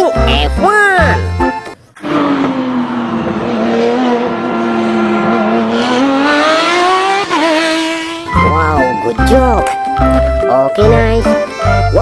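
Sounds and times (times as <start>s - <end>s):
racing car engine: 2.0s - 8.7s.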